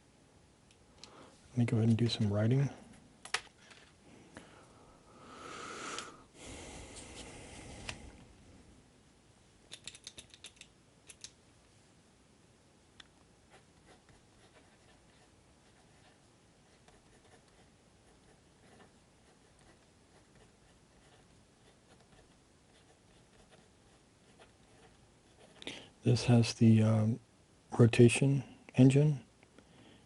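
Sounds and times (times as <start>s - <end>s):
mechanical pencil clicks: 9.7s - 11.4s
pencil scratching on paper: 13.5s - 25.6s.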